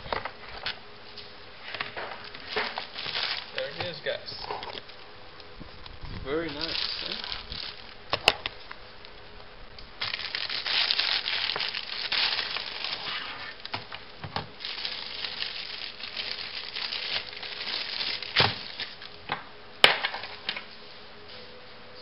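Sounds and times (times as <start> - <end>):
packaging rustling and crinkling: 1.7 - 5.1, 5.7 - 8.6, 10.0 - 19.2.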